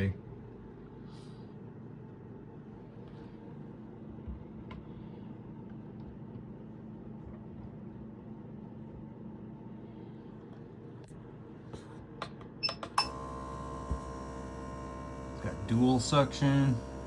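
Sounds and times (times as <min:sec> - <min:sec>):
low hum: 0:13.0 - 0:17.0.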